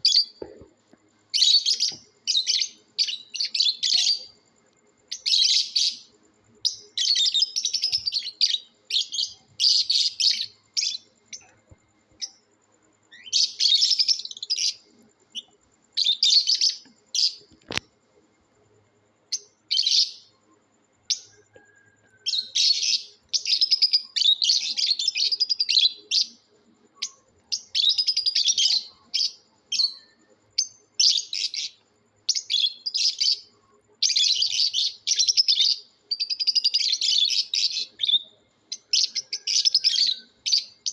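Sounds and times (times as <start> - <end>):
lovebirds chirping: 1.3 - 4.3.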